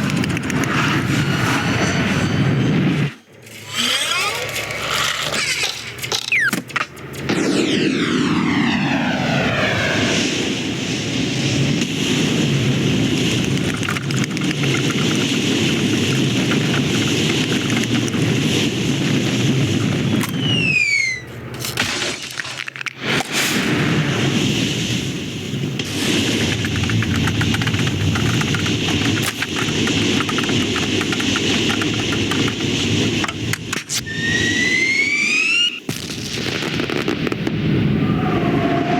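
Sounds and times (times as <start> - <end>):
rocket roaring in flight: 0.0 - 22.2, 23.0 - 38.9
whistle falling in pitch: 20.3 - 21.3, 34.0 - 35.8.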